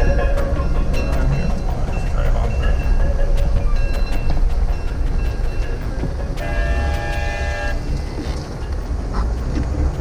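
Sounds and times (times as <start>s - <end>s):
train rumbling: 0.0s - 10.0s
multi-tone train horn: 6.4s - 7.8s.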